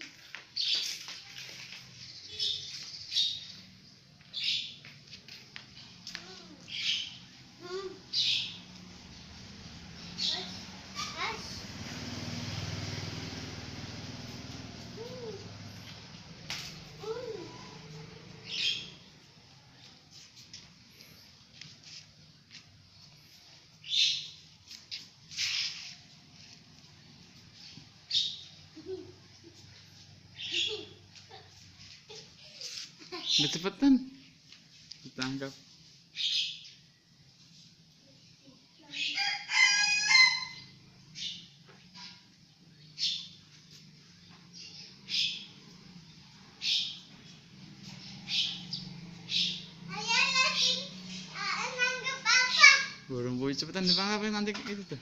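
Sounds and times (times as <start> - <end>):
bird's harsh calls: 18.4 - 19.0, 25.3 - 26.0, 27.6 - 29.0, 30.3 - 31.0, 36.2 - 36.8, 44.6 - 45.6, 46.6 - 47.1, 47.8 - 53.0.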